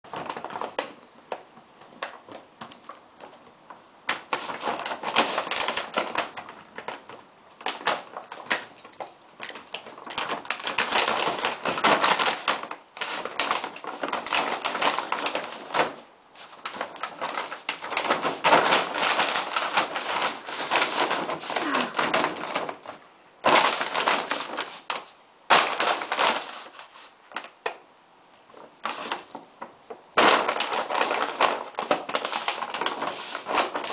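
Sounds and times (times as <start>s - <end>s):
feed bag crinkling: 4.1s - 27.8s, 28.6s - 33.9s.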